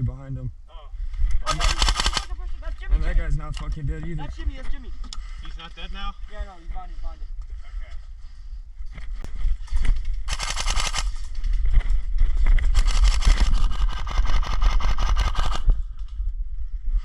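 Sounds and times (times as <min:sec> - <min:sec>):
airsoft guns firing bursts: 0:01.5 - 0:02.3, 0:12.8 - 0:15.7.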